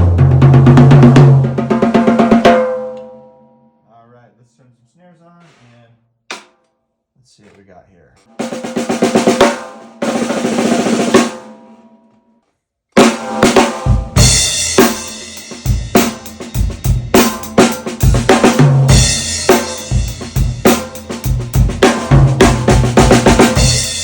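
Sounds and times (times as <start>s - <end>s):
snare drum roll: 0.0s - 2.9s, 8.4s - 11.6s, 13.0s - 24.0s
drum kit beat: 0.0s - 3.1s, 6.3s - 6.6s, 8.3s - 11.7s, 13.0s - 24.0s.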